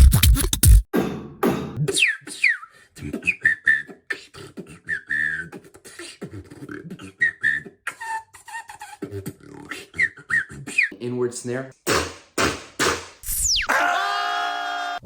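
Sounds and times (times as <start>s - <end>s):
beatboxing: 0.0s - 0.8s, 1.8s - 11.0s, 11.9s - 13.1s.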